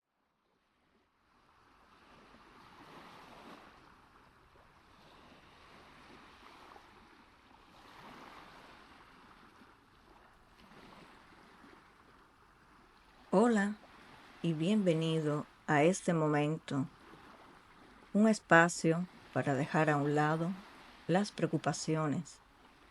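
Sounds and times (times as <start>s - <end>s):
faint ocean waves washing in: 0.6s - 22.9s.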